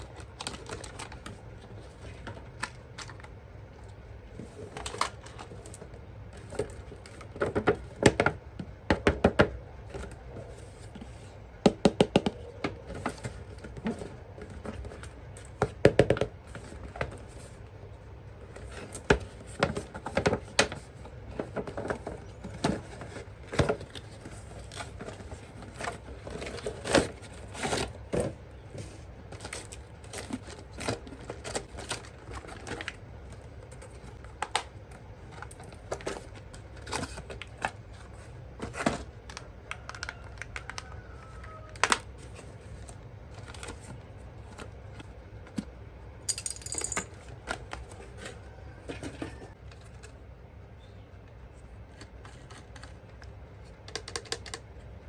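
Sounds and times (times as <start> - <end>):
plastic parts clicking and tapping: 52.0 - 54.8.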